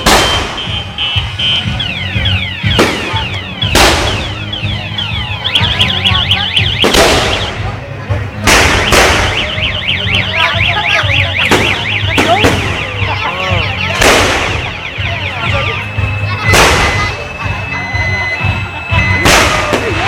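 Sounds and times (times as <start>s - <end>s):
firework booms: 0.0s - 4.7s, 6.6s - 7.7s, 8.4s - 9.7s, 11.4s - 13.1s, 13.9s - 14.8s, 16.4s - 17.2s, 19.2s - 20.0s
car alarm warbling: 0.0s - 20.0s.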